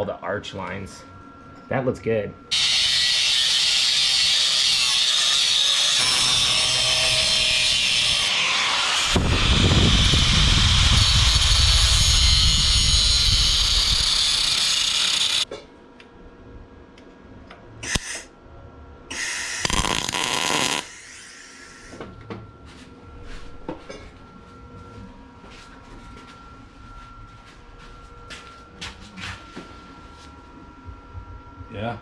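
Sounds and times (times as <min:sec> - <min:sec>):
power tool working metal: 0:02.5 - 0:15.5, 0:17.8 - 0:18.3, 0:19.1 - 0:22.0.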